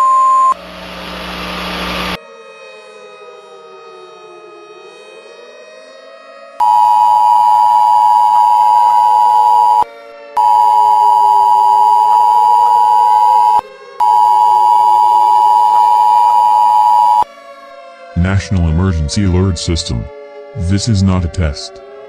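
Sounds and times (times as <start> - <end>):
two-tone alert beep: 6.6 - 9.8, 10.4 - 17.2
faint wailing siren: 6.6 - 20.7.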